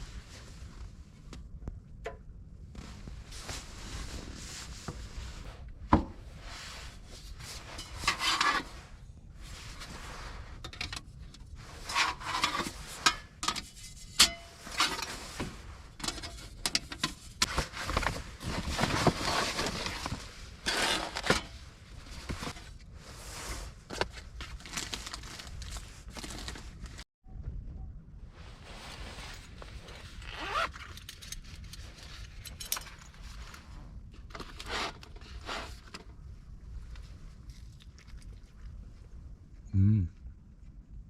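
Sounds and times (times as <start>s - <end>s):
gear rubbing and rustling: 11.5s - 27.0s, 28.4s - 37.8s.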